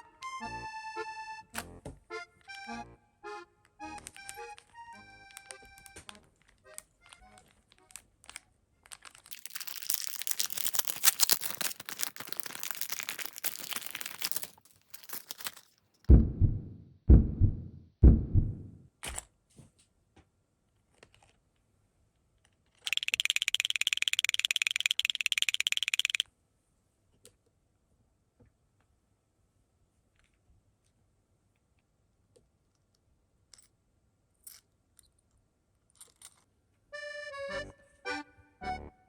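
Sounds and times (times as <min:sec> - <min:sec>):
plastic packaging crinkling: 0:06.1 - 0:15.8
low thumps: 0:16.1 - 0:18.9
rapid buzzing rattle: 0:22.9 - 0:26.2.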